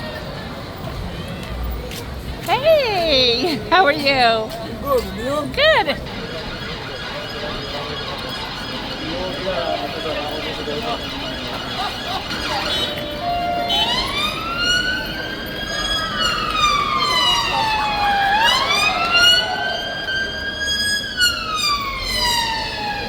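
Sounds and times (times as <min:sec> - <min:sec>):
city street noise: 0:00.0 - 0:23.0
emergency siren wailing: 0:05.7 - 0:23.0.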